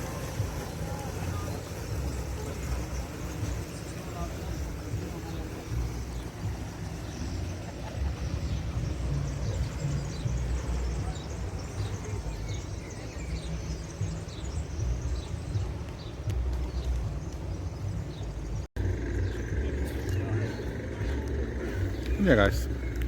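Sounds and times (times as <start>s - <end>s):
small birds chirping: 0.0s - 23.0s
low rumble: 14.8s - 23.0s.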